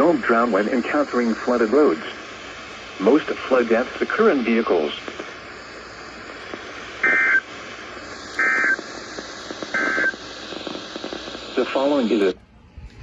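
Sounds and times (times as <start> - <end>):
radio hiss: 0.0 - 13.0
data tone bursts: 8.3 - 8.9, 9.7 - 10.2.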